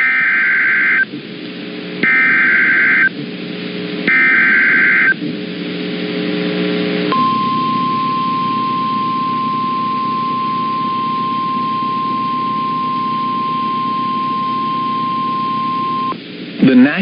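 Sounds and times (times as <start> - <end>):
steady alarm tone: 2.0 - 3.2, 4.1 - 5.2, 7.1 - 16.1
radio hiss: 15.6 - 17.0.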